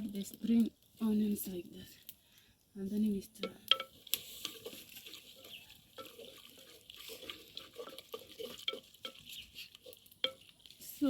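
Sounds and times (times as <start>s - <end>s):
stick scraping and knocking pot: 3.4s - 11.0s.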